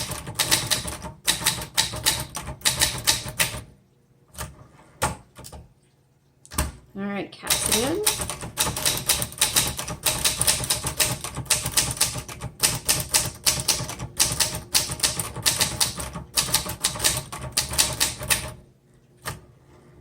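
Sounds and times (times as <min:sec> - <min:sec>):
manual typewriter keys clacking: 0:00.0 - 0:03.6, 0:07.5 - 0:18.6.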